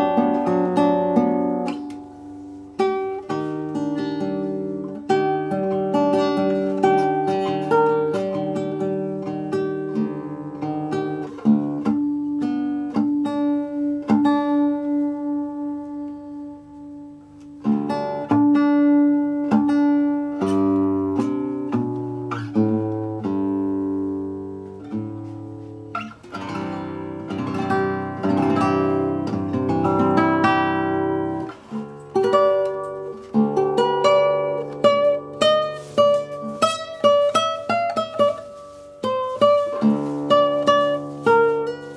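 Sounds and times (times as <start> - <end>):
acoustic guitar plucked melody: 0.0 - 41.9.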